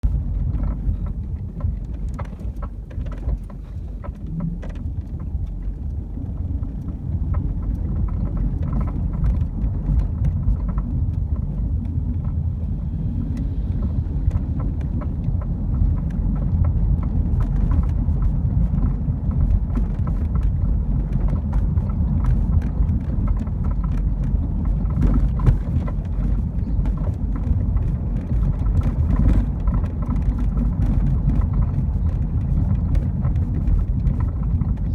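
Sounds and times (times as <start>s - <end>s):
car driving rumble: 0.0s - 34.9s.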